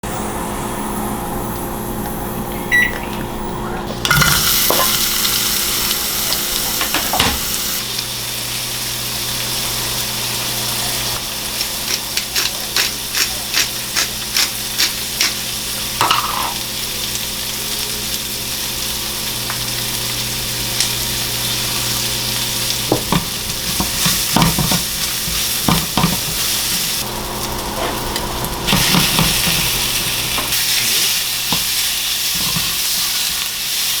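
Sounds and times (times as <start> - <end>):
steady low hum: 0.0 - 10.5
food sizzling in a pan: 4.0 - 34.0
utensil knocking and scraping pan: 22.9 - 26.4.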